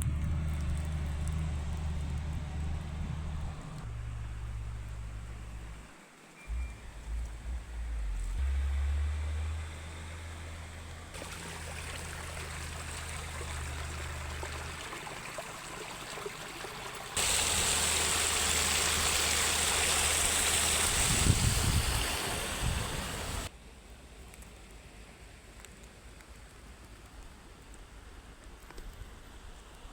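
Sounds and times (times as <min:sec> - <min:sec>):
creek water trickling: 0:00.0 - 0:08.4, 0:09.4 - 0:23.5.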